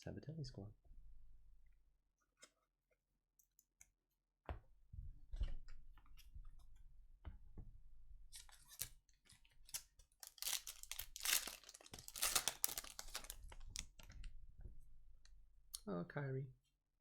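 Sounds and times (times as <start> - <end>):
foil wrapper tearing and crinkling: 9.6 - 14.1.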